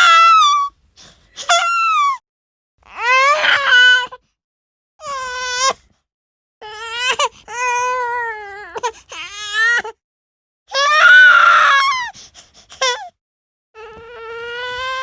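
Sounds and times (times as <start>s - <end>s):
baby crying: 2.9s - 4.2s, 5.0s - 5.8s, 6.6s - 10.0s, 13.8s - 15.0s.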